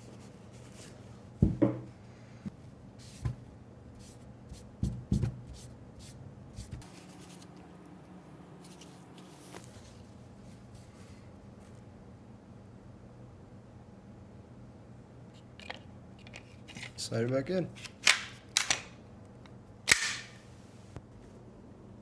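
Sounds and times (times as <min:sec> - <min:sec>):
pistol slide knocks: 0:19.9 - 0:20.4.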